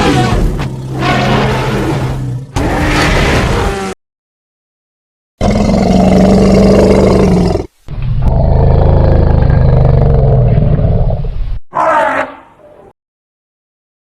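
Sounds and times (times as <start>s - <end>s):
elephant roaring: 11.7s - 12.9s.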